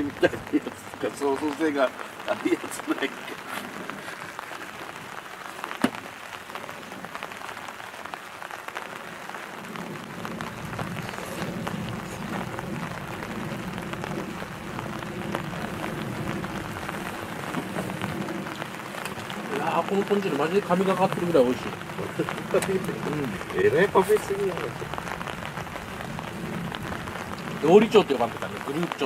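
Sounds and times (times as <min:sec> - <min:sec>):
wood fire crackling: 0:00.0 - 0:29.0
sharp pops from fire: 0:05.7 - 0:06.4
low steady rumble: 0:09.6 - 0:28.7.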